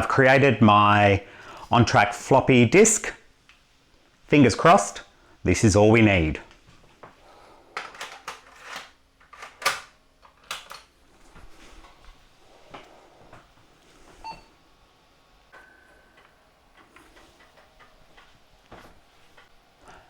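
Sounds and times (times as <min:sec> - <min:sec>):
clicks from handling computer: 0:07.8 - 0:10.9.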